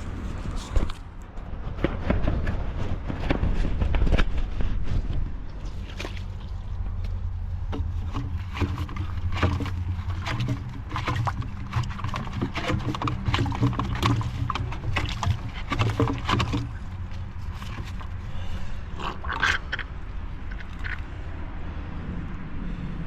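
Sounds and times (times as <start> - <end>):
pipe reaming scraping and clicking: 3.2 - 21.1.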